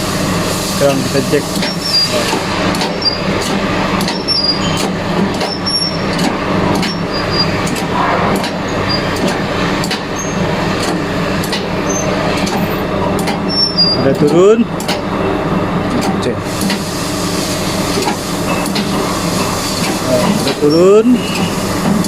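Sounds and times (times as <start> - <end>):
hydraulic jack clicks and squeaks: 1.6 - 7.8, 8.9 - 15.0, 20.4 - 22.0.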